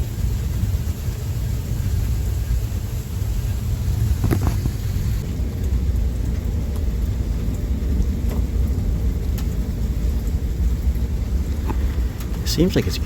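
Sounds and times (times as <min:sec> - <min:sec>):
low rumbling thunder: 0:00.0 - 0:13.0.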